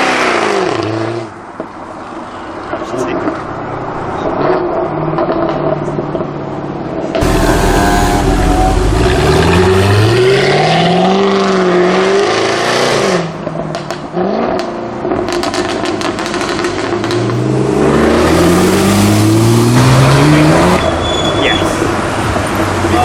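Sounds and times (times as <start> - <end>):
car engine revving: 7.2 - 13.0, 17.0 - 20.8.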